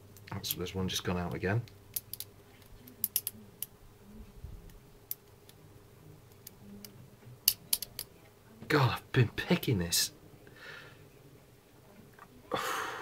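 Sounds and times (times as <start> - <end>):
lock pick metallic clicks: 1.9 - 2.3, 3.0 - 3.7, 7.5 - 8.1.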